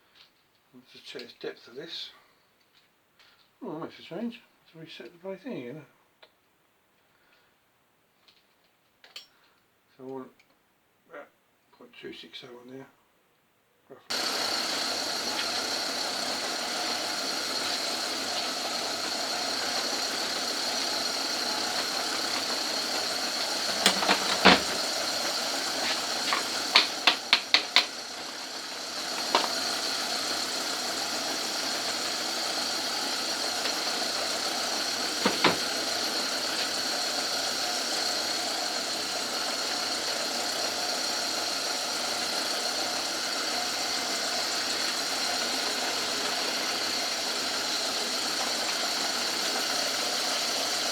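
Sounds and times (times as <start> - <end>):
lathe running with high whine: 14.1 - 50.9
quick clicks: 19.5 - 28.0.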